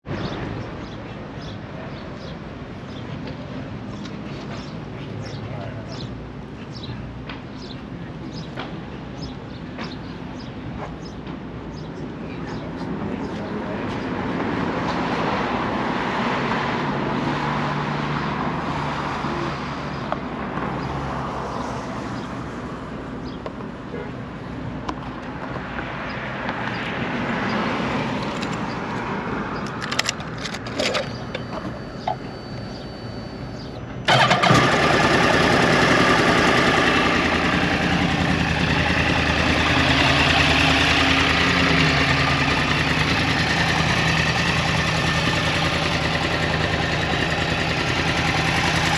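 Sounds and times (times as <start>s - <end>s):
motorcycle engine idling: 32.0s - 48.9s.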